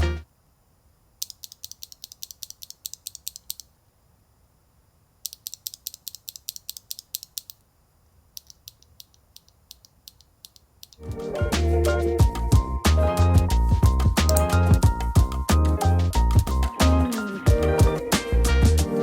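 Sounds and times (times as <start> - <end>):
keyboard switches clicking: 1.2 - 3.7, 5.2 - 7.6, 8.4 - 11.0.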